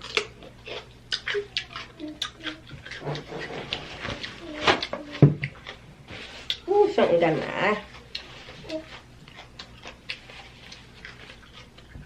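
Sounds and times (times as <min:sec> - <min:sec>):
wet chewing smacks: 0:00.0 - 0:03.0, 0:07.8 - 0:12.0.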